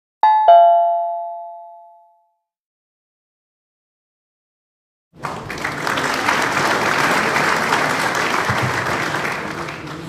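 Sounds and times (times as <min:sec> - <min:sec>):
audience applause: 0:05.2 - 0:10.0.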